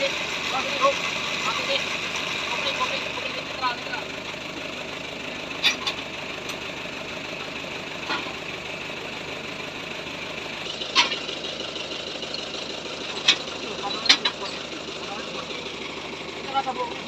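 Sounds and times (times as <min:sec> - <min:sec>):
engine idling: 0:00.0 - 0:17.0
sharp engine knocks: 0:10.6 - 0:11.6, 0:12.6 - 0:15.4.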